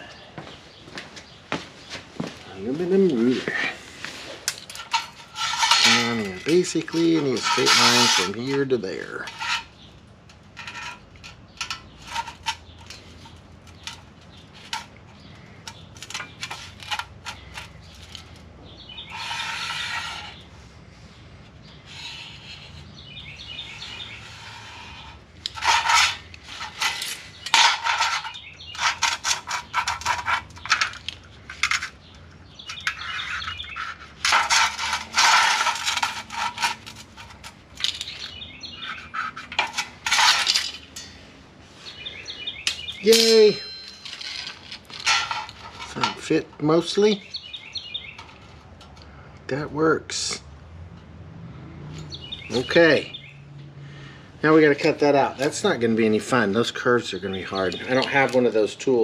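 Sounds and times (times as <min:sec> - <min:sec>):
metal scraping strokes: 0:03.1 - 0:09.8, 0:15.7 - 0:32.0, 0:32.7 - 0:42.0.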